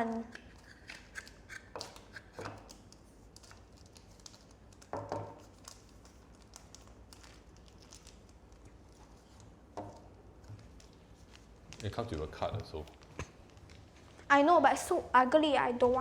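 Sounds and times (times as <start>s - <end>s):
plastic packet crinkling: 1.3s - 9.6s.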